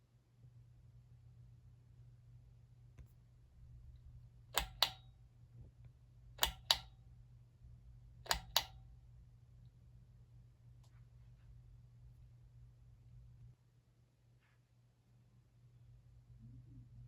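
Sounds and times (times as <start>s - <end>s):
steady low hum: 0.0s - 17.0s
fan pull-chain switch clicking: 4.6s - 5.1s, 6.4s - 7.0s, 8.2s - 8.8s.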